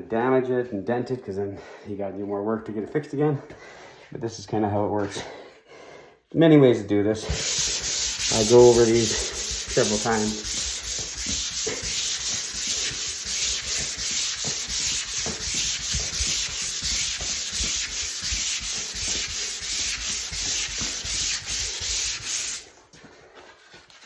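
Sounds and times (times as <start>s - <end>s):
sandpaper rubbing on drywall: 7.2s - 22.8s.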